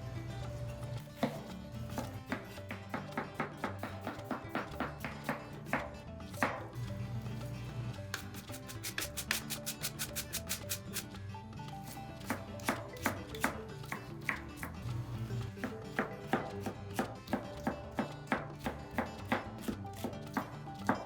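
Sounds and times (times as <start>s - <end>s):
background music: 0.0s - 21.0s
knife chopping on cutting board: 1.2s - 6.7s, 8.1s - 11.0s, 12.2s - 14.8s, 15.6s - 21.0s.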